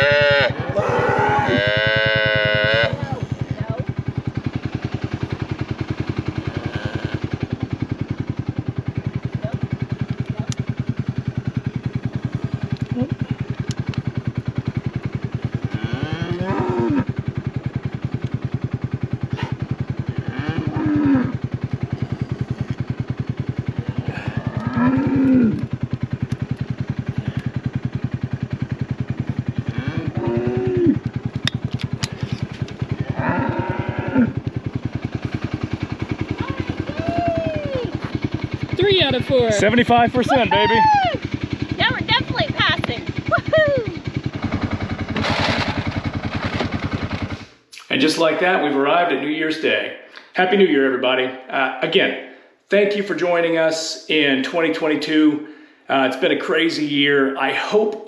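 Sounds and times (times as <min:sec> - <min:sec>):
calves mooing: 0:00.0 - 0:03.2, 0:06.4 - 0:07.3, 0:15.7 - 0:17.1, 0:20.2 - 0:21.4, 0:24.2 - 0:25.6, 0:29.7 - 0:31.0, 0:33.0 - 0:34.4
engine idling: 0:00.0 - 0:58.0.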